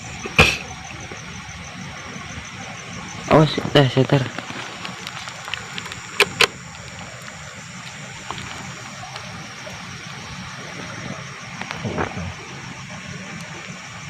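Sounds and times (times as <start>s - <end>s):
steady hum with high whine: 0.0s - 14.0s
sharp clicks: 5.8s - 6.9s.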